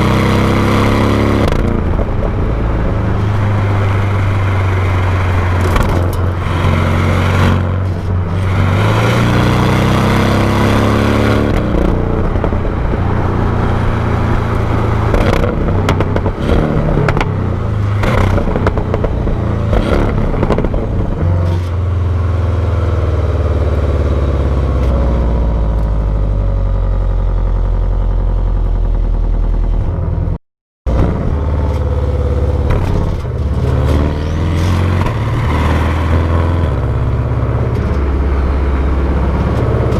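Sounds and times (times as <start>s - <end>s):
car engine revving: 0.0s - 25.9s, 26.6s - 39.9s.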